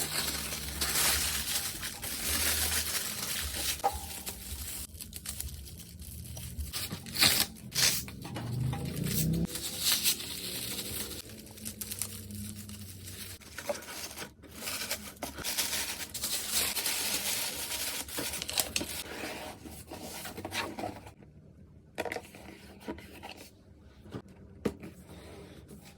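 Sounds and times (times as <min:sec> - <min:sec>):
packing materials crinkling and tearing: 0:00.0 - 0:19.1.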